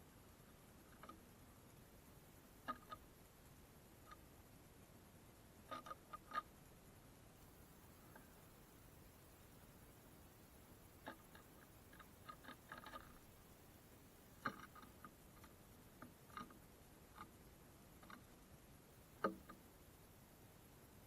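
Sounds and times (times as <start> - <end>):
birds pecking at feeder: 7.8 - 17.4.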